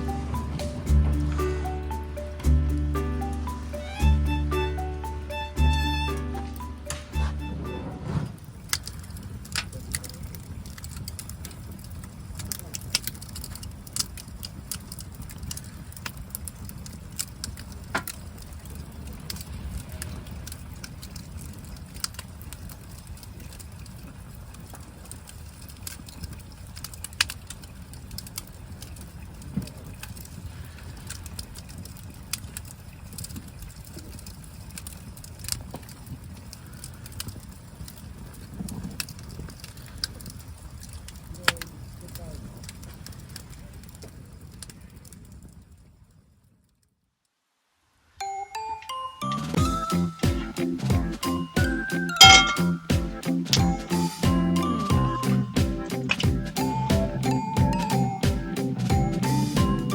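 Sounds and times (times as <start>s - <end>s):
low steady rumble: 0.0s - 12.7s
campfire crackling and popping: 0.0s - 47.0s, 49.4s - 59.9s.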